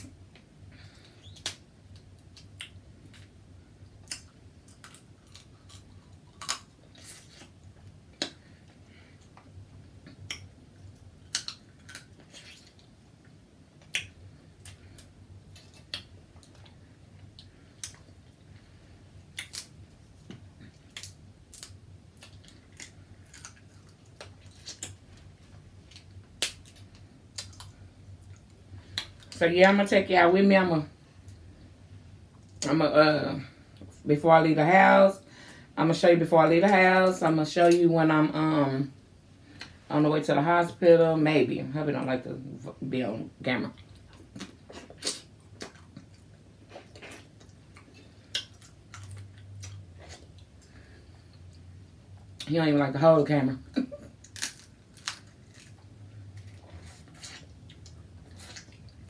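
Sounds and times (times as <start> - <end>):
person eating with wet smacks: 0.0 - 18.5, 19.2 - 29.4, 43.8 - 51.6, 53.9 - 59.0
steady low hum: 0.0 - 59.0.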